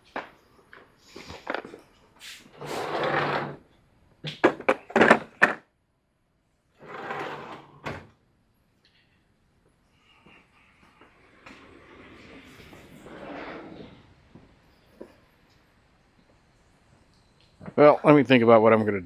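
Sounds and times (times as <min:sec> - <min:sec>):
tool drawer sliding: 0:02.5 - 0:03.6, 0:06.8 - 0:08.1, 0:11.6 - 0:14.0.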